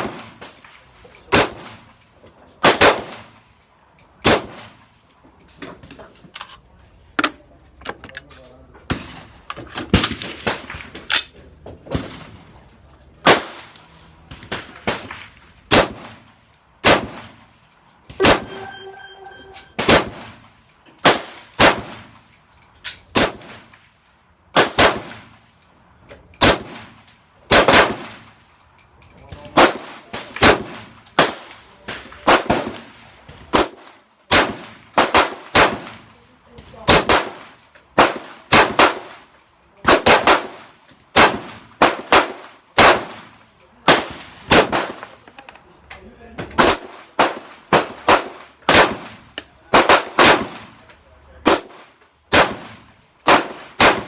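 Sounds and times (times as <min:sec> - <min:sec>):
rifle gunshots: 0:02.6 - 0:03.3, 0:08.9 - 0:11.2, 0:14.4 - 0:16.2, 0:16.8 - 0:17.4, 0:18.2 - 0:18.8, 0:19.8 - 0:20.4, 0:24.6 - 0:25.3, 0:27.5 - 0:28.2, 0:32.2 - 0:32.9, 0:33.5 - 0:36.0, 0:38.0 - 0:39.1, 0:41.2 - 0:43.3, 0:43.9 - 0:45.1, 0:46.6 - 0:50.7, 0:51.4 - 0:54.0
steady ringing tone: 0:18.3 - 0:19.8.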